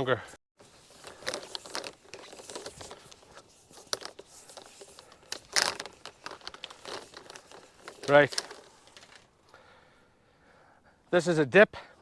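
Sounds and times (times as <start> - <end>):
rustling and crackling: 0.6 - 9.5.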